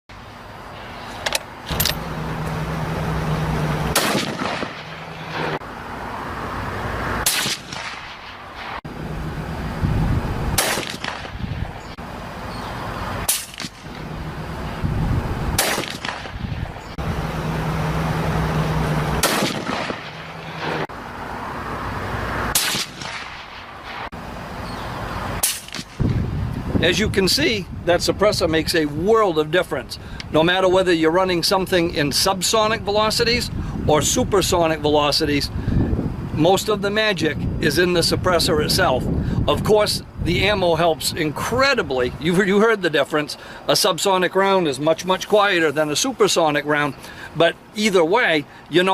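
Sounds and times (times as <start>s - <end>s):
gunshots: 3.9s - 5.6s, 7.2s - 8.8s, 10.6s - 11.4s, 13.3s - 13.9s, 15.6s - 16.4s, 19.2s - 20.8s, 22.5s - 24.1s.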